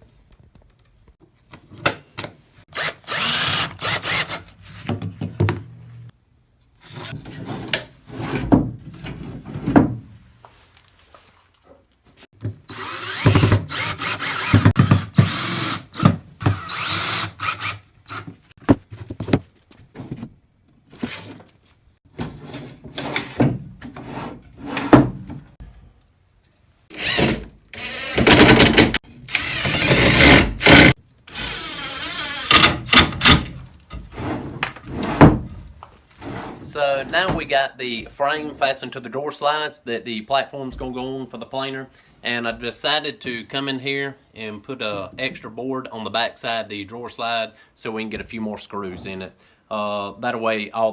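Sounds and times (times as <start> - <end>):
power drill driving screws into wood: 2.7 - 4.4, 12.6 - 18.3, 26.9 - 33.6.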